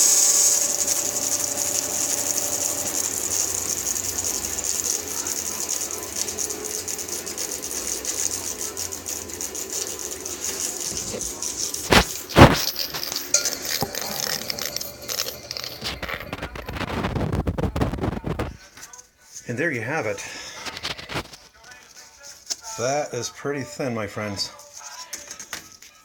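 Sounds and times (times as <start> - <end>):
bandsaw cutting wood: 0.0 - 17.0.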